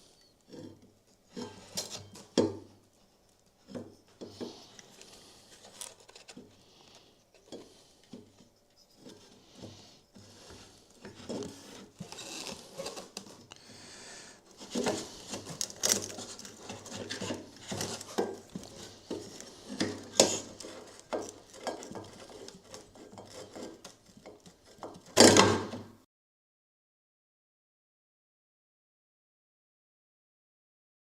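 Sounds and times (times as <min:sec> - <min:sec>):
hands handling small parts: 0:03.2 - 0:13.6, 0:14.5 - 0:25.0.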